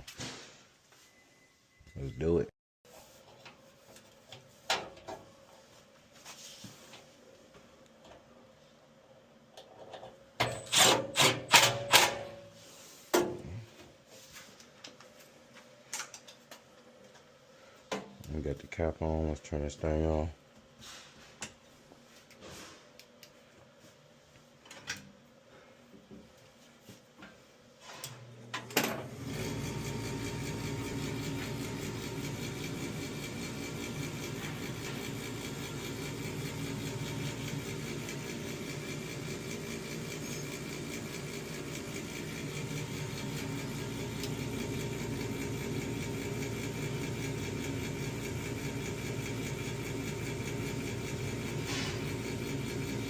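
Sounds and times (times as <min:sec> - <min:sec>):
furnace motor humming: 0:27.4 - 0:53.0.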